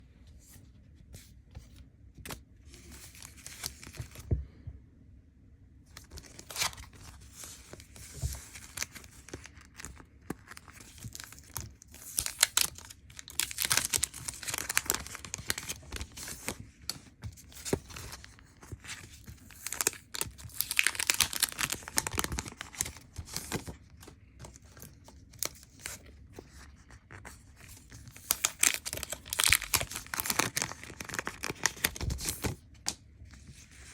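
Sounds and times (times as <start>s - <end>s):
packaging tearing and crinkling: 7.8s - 16.6s, 19.0s - 23.8s, 27.7s - 32.6s.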